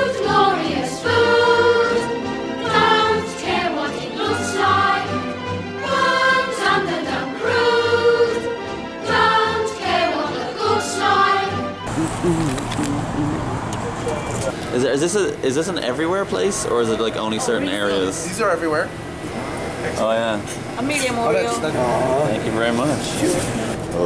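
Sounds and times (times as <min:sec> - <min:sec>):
choir singing long held notes: 0:00.0 - 0:12.1.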